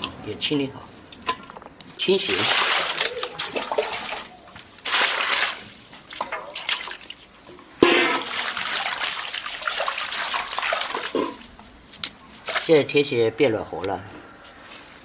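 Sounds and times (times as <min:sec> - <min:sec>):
water running and splashing: 0:02.1 - 0:13.0.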